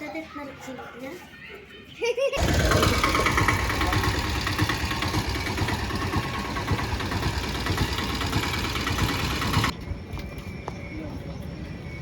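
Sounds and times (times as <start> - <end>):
engine idling with rapid ticking: 2.4 - 9.7.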